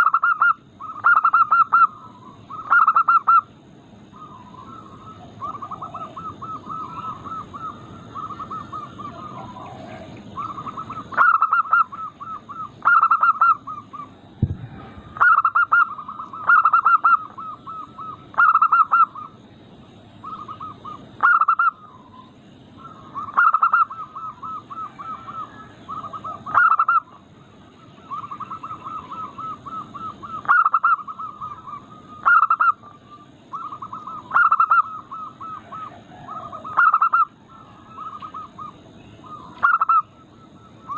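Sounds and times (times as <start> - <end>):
dove cooing: 0.0 - 19.4, 20.2 - 40.9
low thump: 14.4 - 14.8.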